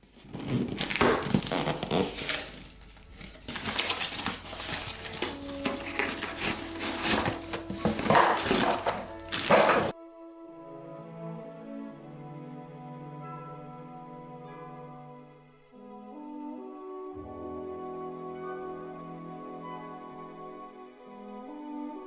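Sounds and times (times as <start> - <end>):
packaging crinkling: 0.0 - 9.9
soft background music: 3.4 - 22.0.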